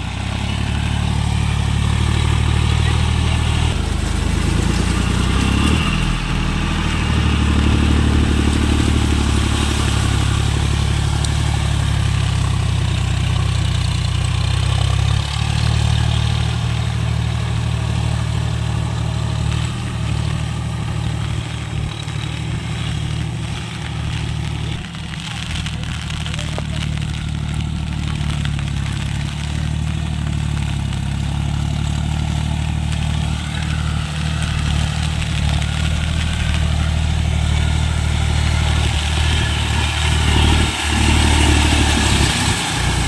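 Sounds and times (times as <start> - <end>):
tractor diesel engine running: 0.0 - 43.0.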